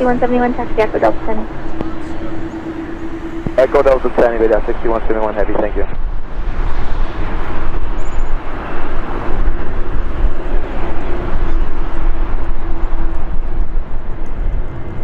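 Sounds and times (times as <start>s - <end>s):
faint steady hum: 0.0s - 8.5s
jet engines roaring: 0.0s - 15.0s.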